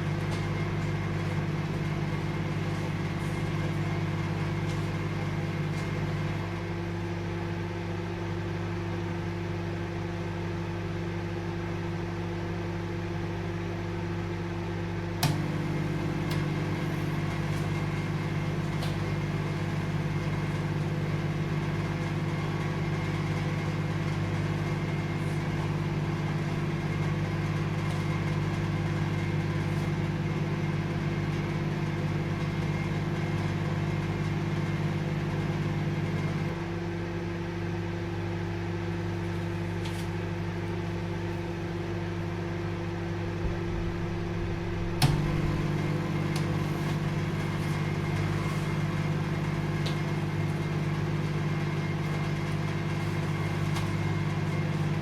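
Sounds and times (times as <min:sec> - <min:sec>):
microwave oven humming: 0:00.0 - 0:55.0
sharp click: 0:44.7 - 0:45.4.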